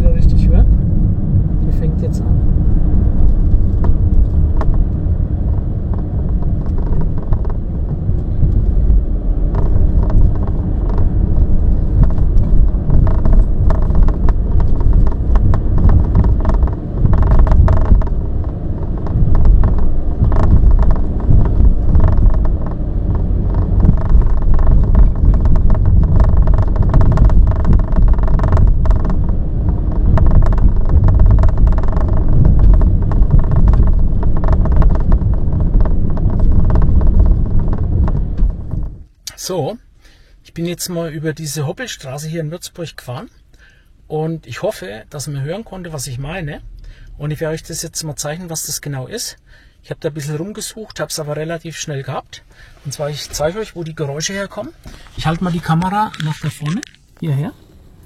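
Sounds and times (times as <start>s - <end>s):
tyre and road rumble: 0.0s - 58.0s
trim rattling: 2.4s - 39.2s.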